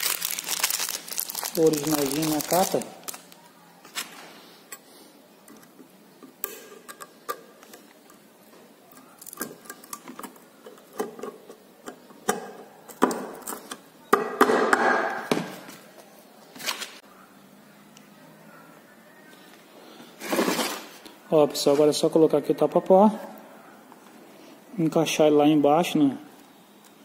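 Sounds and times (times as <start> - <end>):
small metal parts clicking: 8.9 - 13.8
scraping and rustling: 20.2 - 21.0.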